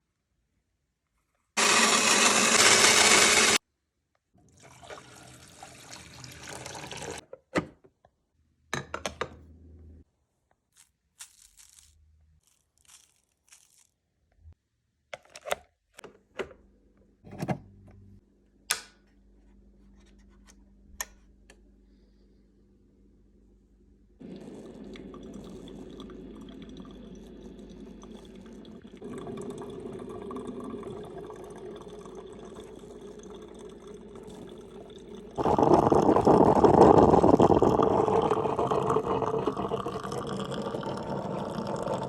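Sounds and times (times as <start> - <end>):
coffee brewer humming: 1.6 - 3.6, 24.2 - 42.0
water filling: 4.4 - 7.2, 24.2 - 42.0.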